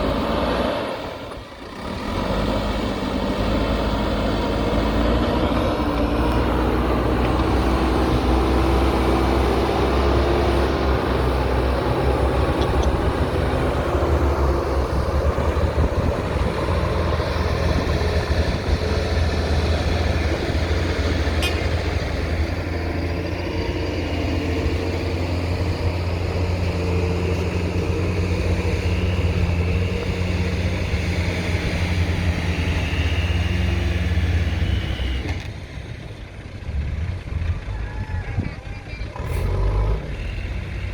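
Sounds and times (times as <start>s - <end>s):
diesel engine running under load: 0.0s - 40.9s.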